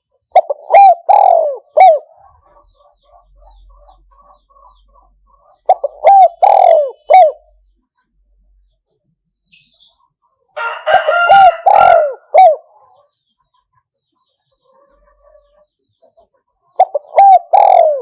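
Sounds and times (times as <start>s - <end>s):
dove cooing: 0.3s - 2.4s, 5.6s - 7.6s, 10.6s - 12.9s, 16.8s - 18.0s.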